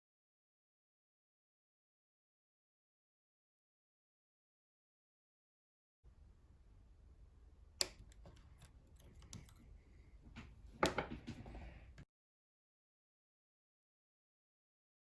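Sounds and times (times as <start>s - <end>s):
small metallic clicks and taps: 7.8s - 9.7s.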